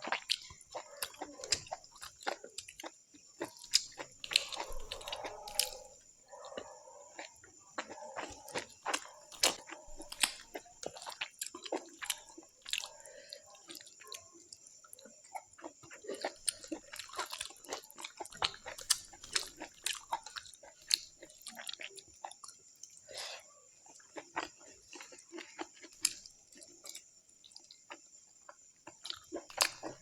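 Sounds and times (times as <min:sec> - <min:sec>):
person chewing with mouth open: 0:00.0 - 0:30.0.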